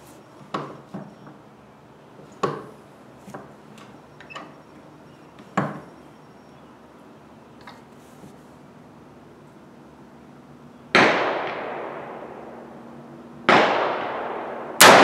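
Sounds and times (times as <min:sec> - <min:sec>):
rifle gunshots with echo: 0:10.9 - 0:15.0
fainter gunshots: 0:11.0 - 0:12.7, 0:13.5 - 0:15.0.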